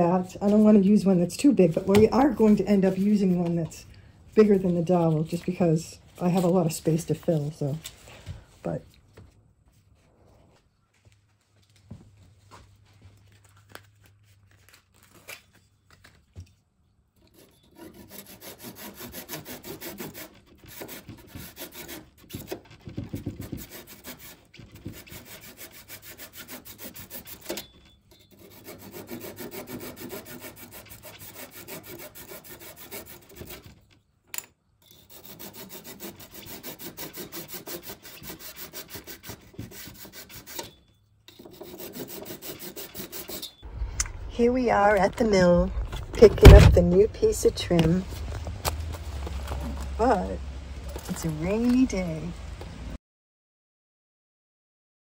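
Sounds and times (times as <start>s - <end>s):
tool rasping into wood: 17.3s - 33.7s, 35.0s - 43.6s.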